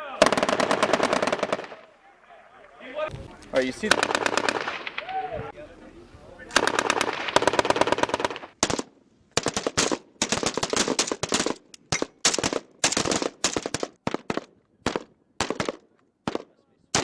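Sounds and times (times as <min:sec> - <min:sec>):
automatic gunfire bursts: 0:00.2 - 0:01.9, 0:03.8 - 0:05.0, 0:06.5 - 0:16.4.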